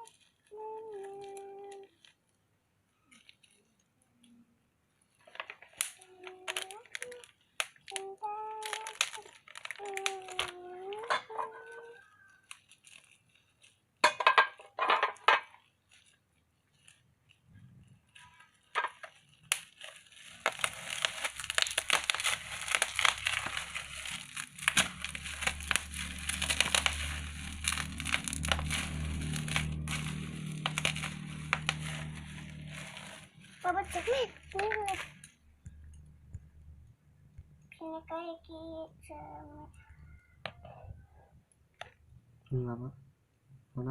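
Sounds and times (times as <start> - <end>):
packaging crinkling: 0.0 - 2.3, 2.9 - 4.3, 5.1 - 14.1, 15.4 - 36.1
loud rustling bursts: 18.0 - 35.2.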